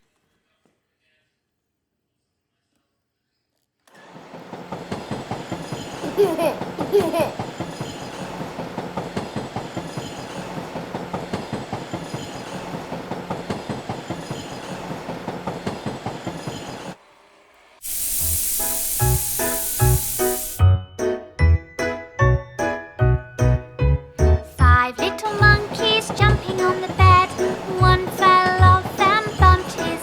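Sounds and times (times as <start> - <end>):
train clickety-clack: 4.0 - 17.0, 24.6 - 30.0
short high rising-and-falling sounds: 17.8 - 20.6.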